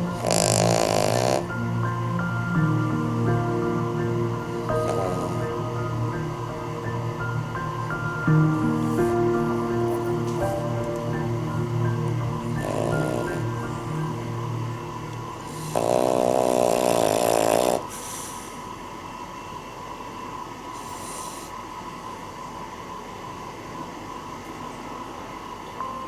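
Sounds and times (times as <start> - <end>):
dog snoring: 0.0 - 1.6, 4.6 - 6.3, 12.4 - 14.1, 15.2 - 18.6, 20.8 - 21.5
soft background music: 0.0 - 17.8, 25.7 - 26.0.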